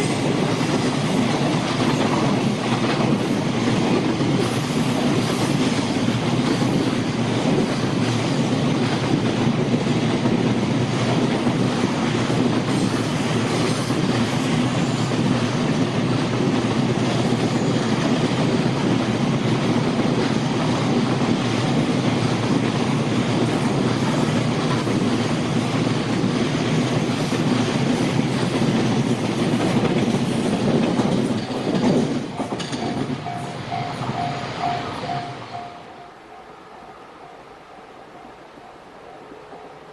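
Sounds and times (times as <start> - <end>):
freight train wheels clattering: 0.0 - 36.1
level-crossing bell ringing: 32.4 - 37.5.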